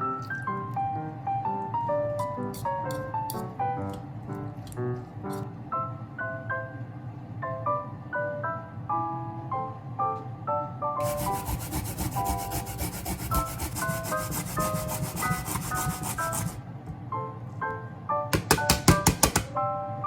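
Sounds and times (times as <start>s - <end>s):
light background music: 0.0s - 20.0s
radish scraping on a grater: 11.0s - 16.6s.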